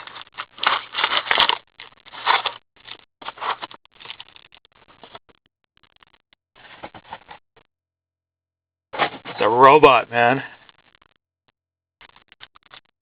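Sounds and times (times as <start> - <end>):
card pack wrapper crinkling: 0.0 - 5.2
cards rustling: 0.0 - 5.2.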